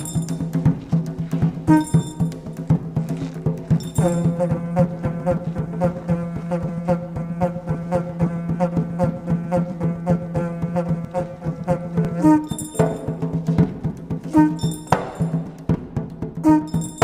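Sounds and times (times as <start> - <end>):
quick percussive strikes: 0.0 - 6.2, 11.0 - 17.0.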